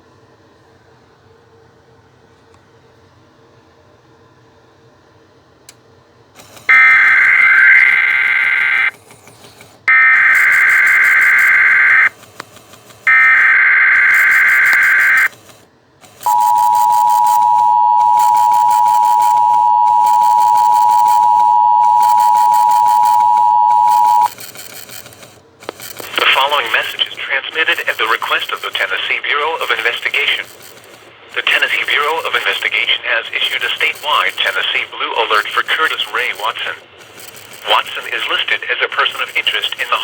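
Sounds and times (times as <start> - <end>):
two-tone attention signal: 6.7 - 8.9, 9.9 - 12.1, 13.1 - 15.3, 16.2 - 24.4
warbling data bursts: 6.7 - 9.0, 9.9 - 12.2, 13.1 - 15.4, 16.2 - 25.0, 25.6 - 40.0.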